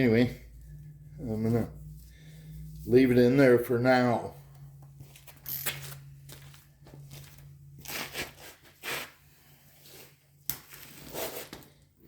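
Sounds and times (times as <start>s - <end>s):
steady low hum: 0.0s - 7.9s
rustling and scraping: 0.0s - 12.0s.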